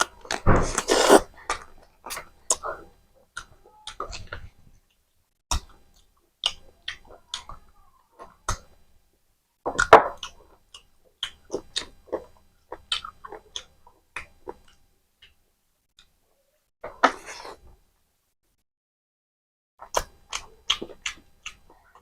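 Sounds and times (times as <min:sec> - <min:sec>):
person chewing food: 0:00.0 - 0:07.6, 0:09.6 - 0:16.2, 0:19.8 - 0:22.0.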